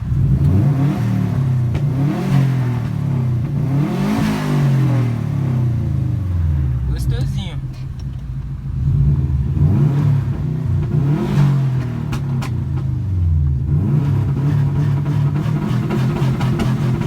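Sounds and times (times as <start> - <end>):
car engine accelerating: 0.0 - 17.0
sharp exhaust cracks: 6.3 - 12.9.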